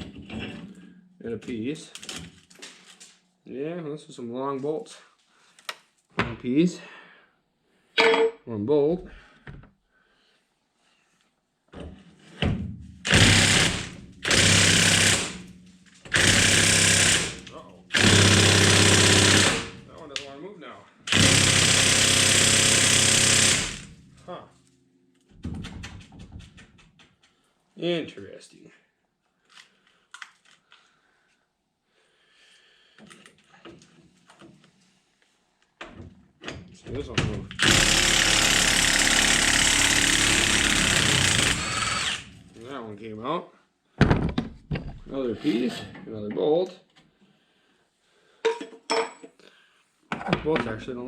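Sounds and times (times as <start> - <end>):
impact wrench running: 13.1 - 19.9, 21.1 - 24.0, 37.5 - 42.4.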